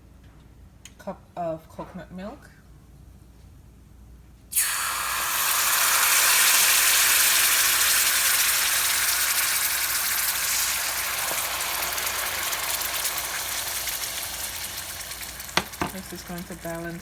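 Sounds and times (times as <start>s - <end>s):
liquid pouring into pan: 4.5s - 17.0s
spices sizzling in hot oil: 4.5s - 17.0s.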